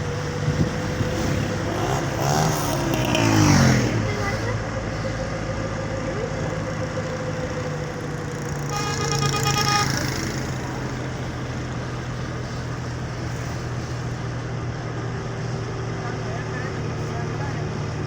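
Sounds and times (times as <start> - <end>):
vehicle engine humming: 0.0 - 18.0
vehicle horn honking: 8.5 - 10.9.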